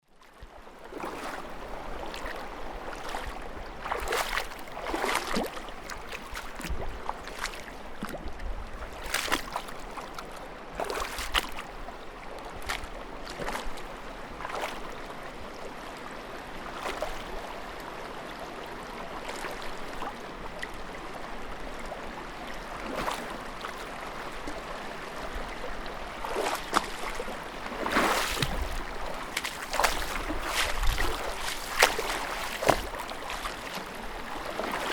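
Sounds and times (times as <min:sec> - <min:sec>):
moving water: 0:00.0 - 0:34.9
footsteps wading through water: 0:00.4 - 0:15.0, 0:16.6 - 0:17.6, 0:22.8 - 0:34.9.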